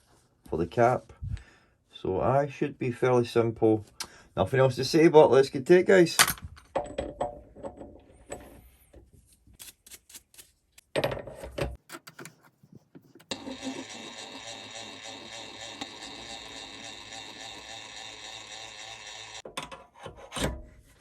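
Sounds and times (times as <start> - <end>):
handling clicks and knocks: 6.2 - 8.4
metal lathe motor humming: 13.3 - 19.4.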